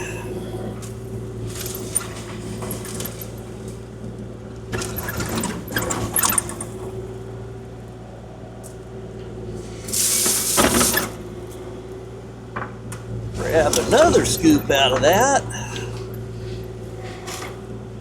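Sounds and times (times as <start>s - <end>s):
excavator diesel engine running: 13.2s - 16.2s.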